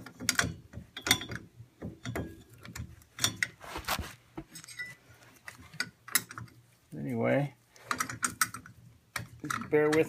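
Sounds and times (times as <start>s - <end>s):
short scraping rustle: 3.6s - 4.2s.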